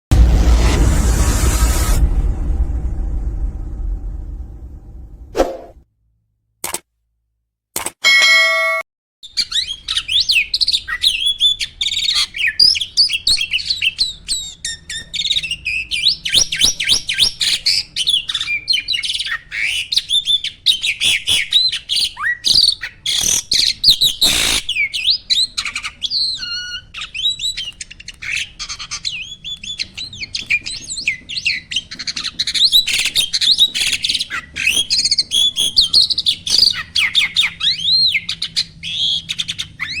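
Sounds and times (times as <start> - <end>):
brief pitched tone: 8.0 - 8.8
starling singing: 9.4 - 40.0.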